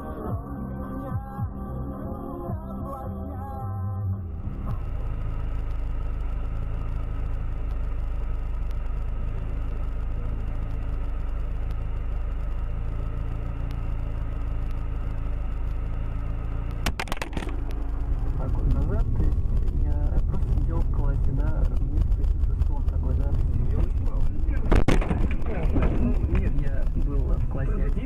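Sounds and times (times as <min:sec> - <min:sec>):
car engine and road noise: 0:00.0 - 0:28.0
sharp clicks or knocks: 0:16.7 - 0:18.0, 0:24.6 - 0:26.5.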